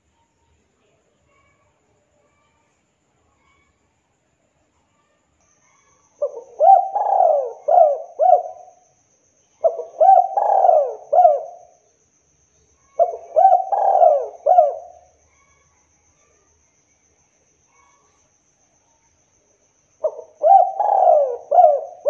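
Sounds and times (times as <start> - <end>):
dove cooing: 6.2 - 8.8, 9.6 - 11.7, 13.0 - 15.1, 20.0 - 22.0.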